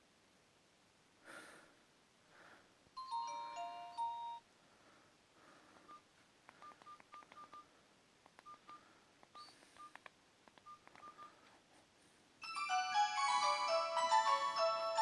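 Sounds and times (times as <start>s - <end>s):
phone keypad beeps: 5.8s - 7.7s, 8.4s - 11.4s
key press clicks: 6.5s - 7.6s, 8.2s - 11.3s.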